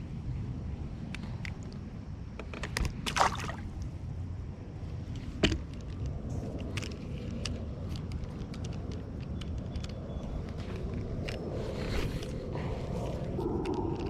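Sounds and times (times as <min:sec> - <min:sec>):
steady low rumble: 0:00.0 - 0:14.0
water splashing: 0:03.1 - 0:03.7.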